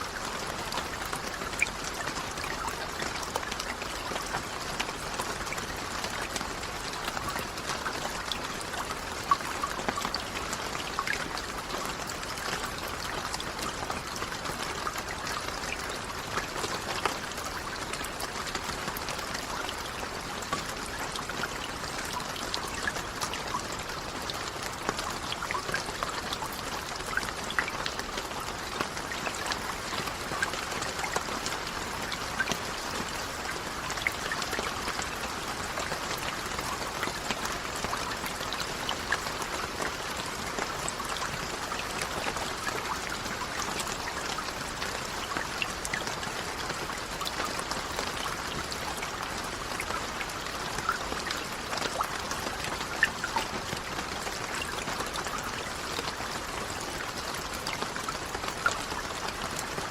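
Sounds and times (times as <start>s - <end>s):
raindrops ticking on a surface: 0.0s - 59.9s.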